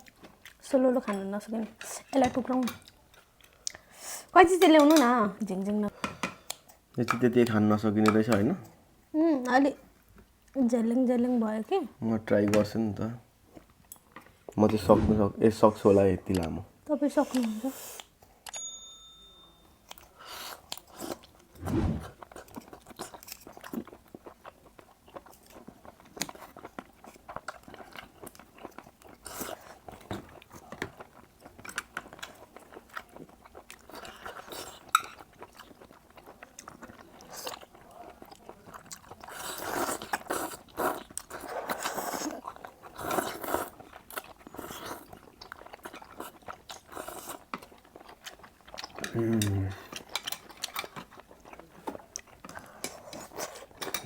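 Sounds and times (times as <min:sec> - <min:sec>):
person chewing: 0:19.9 - 0:54.0.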